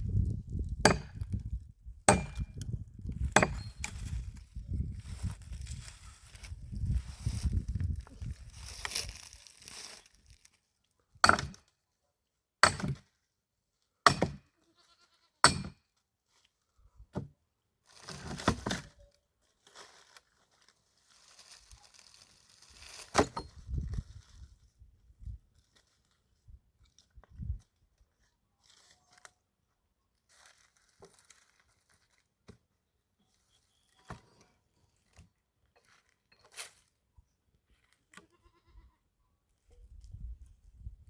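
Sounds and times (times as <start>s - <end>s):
axe chopping wood: 0.7s - 1.4s, 2.1s - 4.0s, 11.2s - 11.6s, 12.6s - 13.1s, 14.1s - 14.5s, 15.4s - 15.8s, 23.0s - 23.5s
branches rustling: 3.1s - 10.7s, 17.8s - 29.4s, 30.1s - 32.4s.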